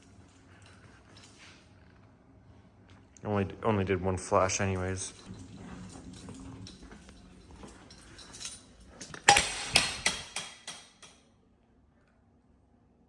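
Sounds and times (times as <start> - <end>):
metallic clank and knocks: 8.1 - 11.2.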